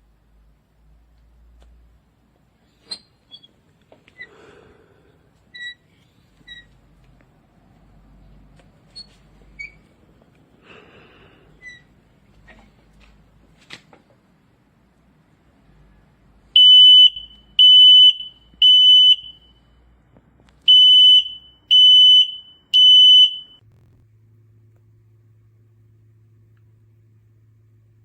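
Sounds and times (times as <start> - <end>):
smoke alarm beeps: 16.6 - 19.6, 20.7 - 23.6.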